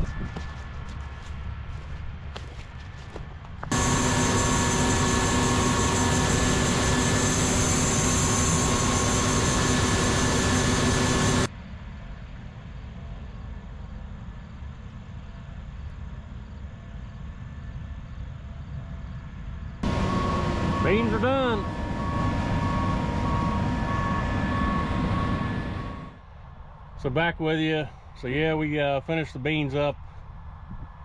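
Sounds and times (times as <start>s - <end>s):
combine harvester drone: 1.2s - 11.5s, 19.8s - 26.2s.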